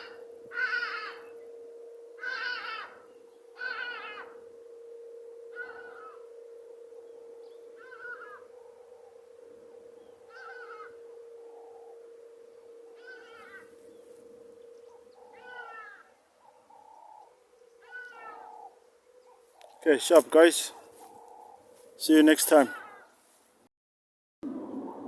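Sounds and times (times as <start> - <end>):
steady hum: 0.0 - 17.5
peacock calling: 0.0 - 23.4.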